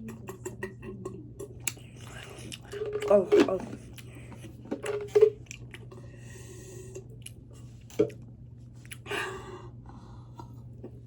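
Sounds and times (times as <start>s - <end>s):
person chewing with wet smacks: 1.4s - 6.1s, 7.0s - 9.1s.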